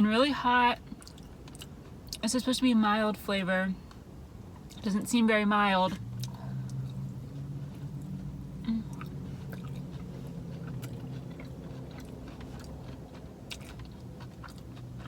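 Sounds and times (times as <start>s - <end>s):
person chewing: 0.9s - 2.2s, 6.2s - 15.0s
low hum: 3.8s - 15.0s.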